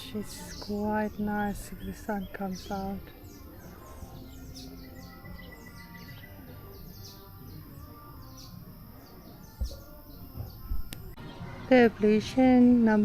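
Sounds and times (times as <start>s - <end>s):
birds chirping: 0.0s - 12.0s
outdoor background noise: 0.0s - 13.0s.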